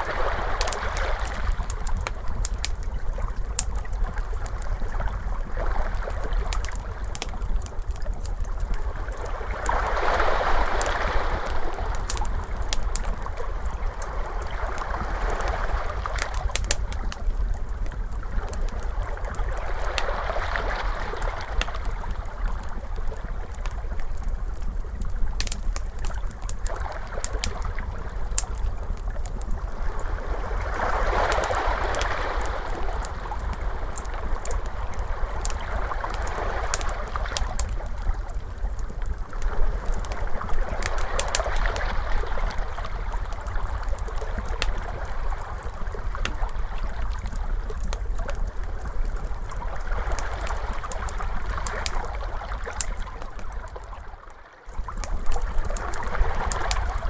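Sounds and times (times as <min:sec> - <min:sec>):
wood fire crackling: 0:00.0 - 0:57.0
ocean waves washing in: 0:09.0 - 0:12.8.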